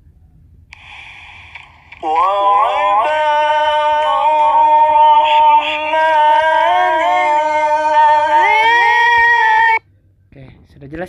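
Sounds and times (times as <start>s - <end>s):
solo voice chanting with echo: 2.0s - 9.8s.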